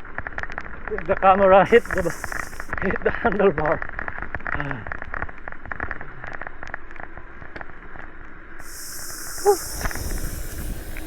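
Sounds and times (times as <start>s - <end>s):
bicycle rattling on rough trail: 0.0s - 11.0s
tyre and wind hiss: 1.4s - 3.4s, 8.6s - 11.0s.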